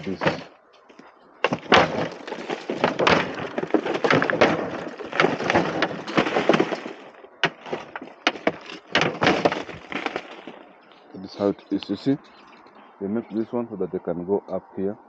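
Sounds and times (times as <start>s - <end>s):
footsteps crunching on gravel: 1.5s - 12.7s.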